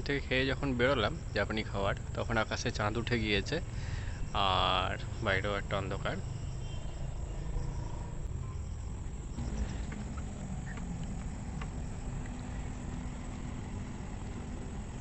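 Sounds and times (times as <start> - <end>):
insects chirping faintly: 0.0 - 15.0
steady low rumble: 7.0 - 15.0.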